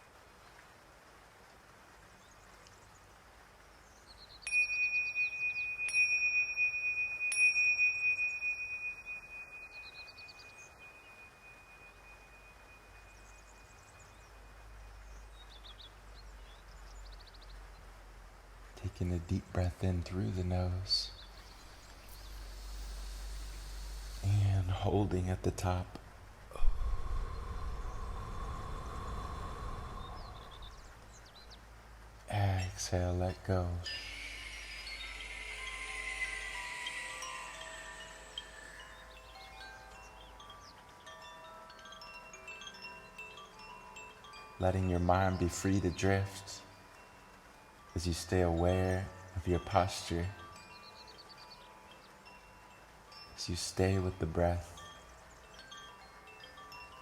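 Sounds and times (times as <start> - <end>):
birds chirping faintly: 0.0 - 57.0
high-pitched meditation chime: 4.4 - 15.5, 21.2 - 25.9, 26.5 - 30.9, 32.6 - 57.0
low outdoor rumble: 18.0 - 39.2
struck metal tone ringing: 33.8 - 40.2.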